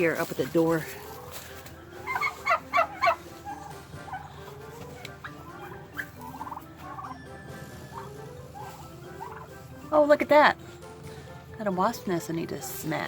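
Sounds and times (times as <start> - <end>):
turkey gobbling: 1.0 - 10.0.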